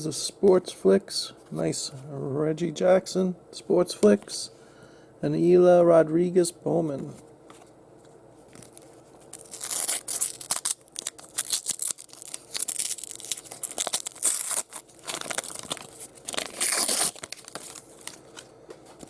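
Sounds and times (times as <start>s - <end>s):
wax paper wrapper tearing: 8.6s - 18.2s.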